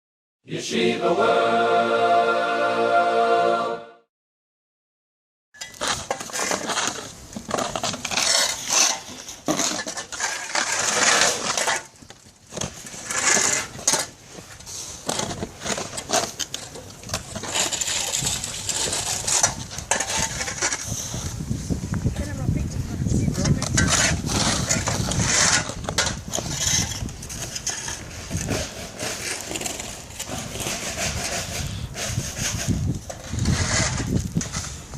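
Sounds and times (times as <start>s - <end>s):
snow shovels scraping pavement: 5.6s - 21.8s, 23.3s - 34.9s.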